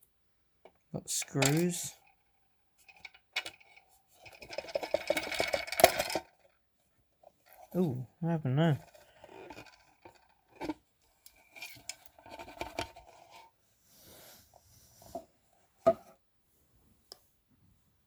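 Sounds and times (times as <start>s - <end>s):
speaker parts clicking and scraping: 2.8s - 6.4s, 8.8s - 13.4s.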